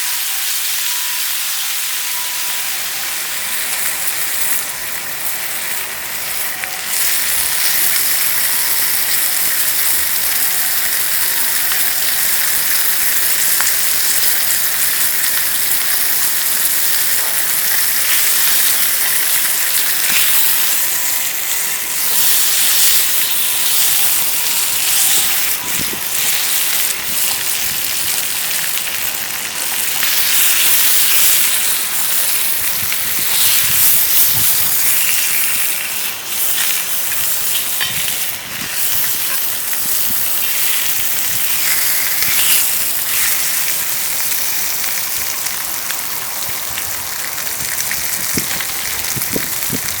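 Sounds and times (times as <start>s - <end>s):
food sizzling in a pan: 0.0s - 50.0s.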